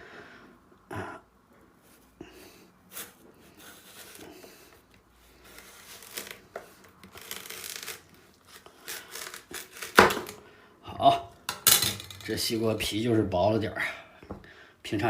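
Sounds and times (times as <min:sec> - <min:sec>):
knife cutting melon rind: 0:02.9 - 0:04.8, 0:05.4 - 0:10.4.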